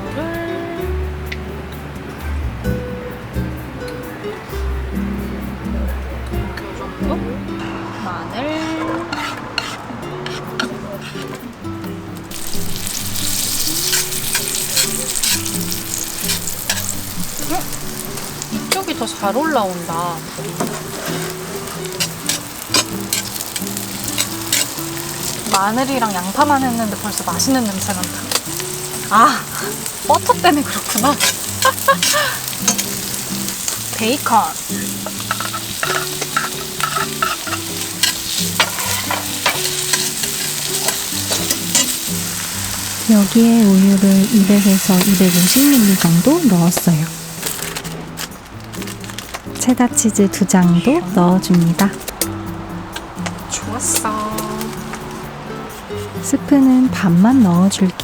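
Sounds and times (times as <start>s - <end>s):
soft background music: 0.0s - 58.0s
utensil scraping a pan: 7.6s - 11.4s, 12.3s - 49.7s
onions sizzling in butter: 12.3s - 56.5s.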